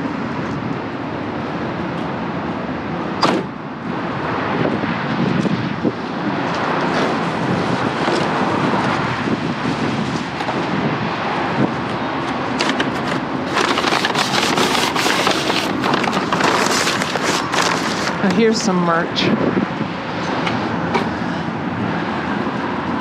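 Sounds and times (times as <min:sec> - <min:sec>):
trash rustling in a dumpster: 0:12.5 - 0:18.4.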